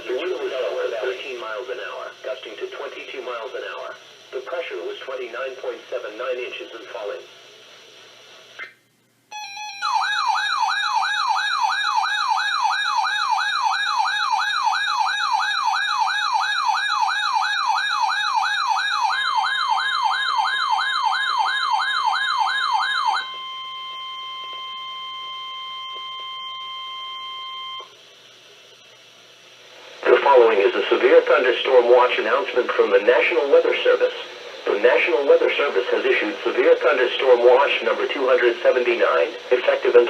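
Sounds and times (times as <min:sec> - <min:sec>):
steady warning alarm tone: 0:00.0 - 0:07.2, 0:09.3 - 0:28.4, 0:29.3 - 0:40.0
warbling alarm tone: 0:09.3 - 0:28.0.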